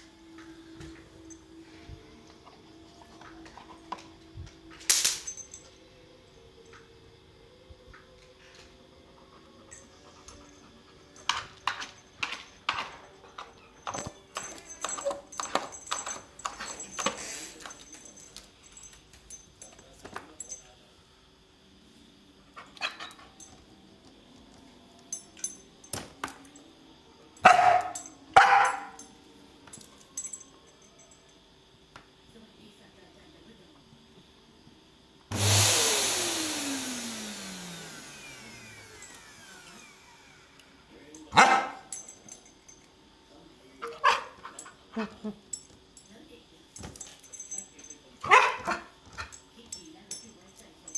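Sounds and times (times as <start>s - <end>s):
vacuum cleaner motor whine: 33.8s - 42.4s.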